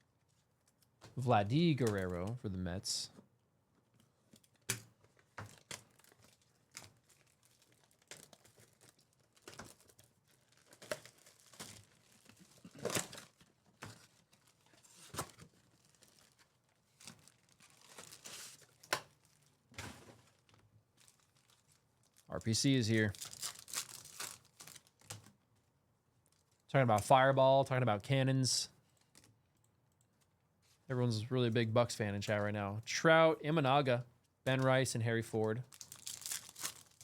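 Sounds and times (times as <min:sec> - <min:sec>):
wrappers crinkling and tearing: 0:04.4 - 0:25.4, 0:26.2 - 0:26.7, 0:35.6 - 0:37.0.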